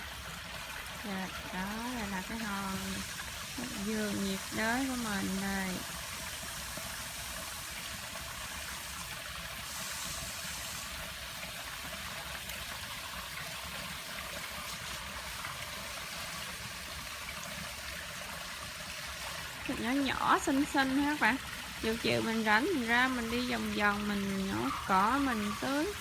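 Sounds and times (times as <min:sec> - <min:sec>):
water running down a waterfall: 0:00.0 - 0:26.0.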